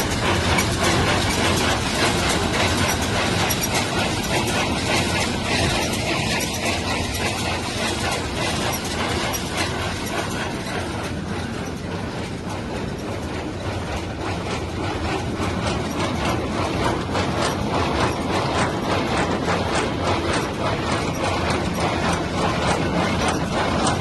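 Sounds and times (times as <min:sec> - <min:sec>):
baler mechanical clatter: 0:00.0 - 0:24.0
tractor engine running: 0:00.0 - 0:24.0.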